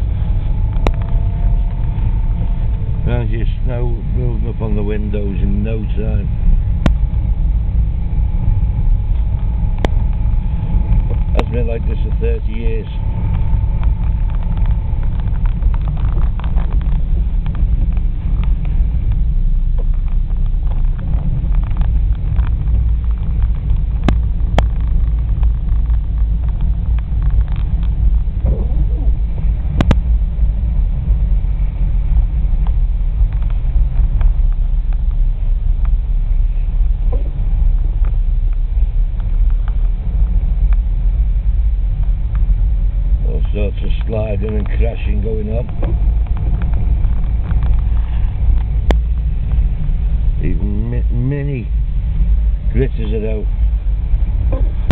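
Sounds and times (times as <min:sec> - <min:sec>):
engine and tyres rumbling: 0:00.0 - 0:54.9
faint light ticks: 0:38.0 - 0:40.9.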